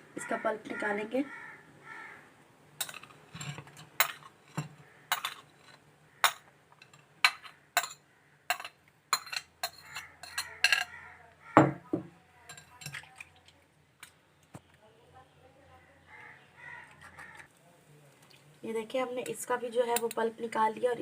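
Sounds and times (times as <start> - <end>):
spoon scraping a sieve: 2.8 - 10.9.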